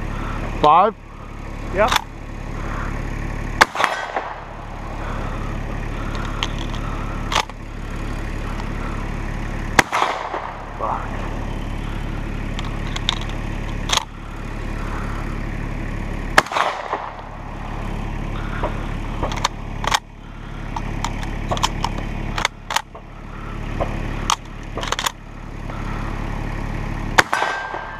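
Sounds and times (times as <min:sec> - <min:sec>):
low engine hum: 0:00.0 - 0:27.9
shotgun shots: 0:03.6 - 0:04.7, 0:09.8 - 0:10.8, 0:16.4 - 0:17.3, 0:27.2 - 0:27.9.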